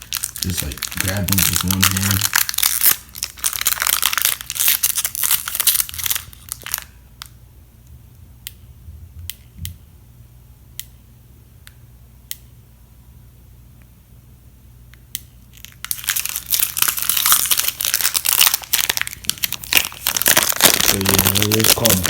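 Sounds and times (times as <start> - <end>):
foil wrapper crinkling: 0.0 - 7.3, 15.5 - 22.0.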